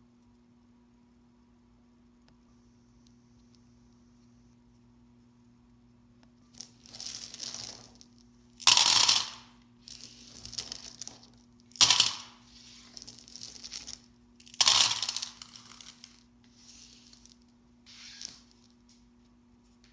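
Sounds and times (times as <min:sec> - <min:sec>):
candies rattling in packaging: 0:06.6 - 0:18.7
packaging crinkling: 0:09.3 - 0:18.8.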